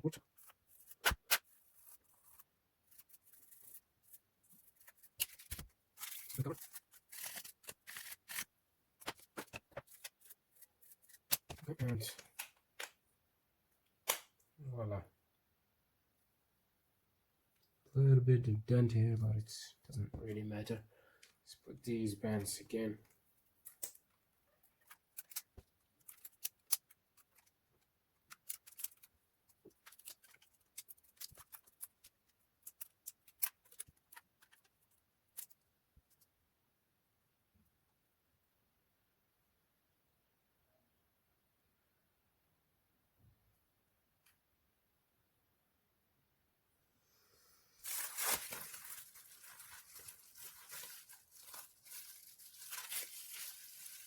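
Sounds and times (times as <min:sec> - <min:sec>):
crinkly handling noise: 0:00.0 - 0:13.0, 0:23.0 - 0:36.4, 0:47.7 - 0:54.0.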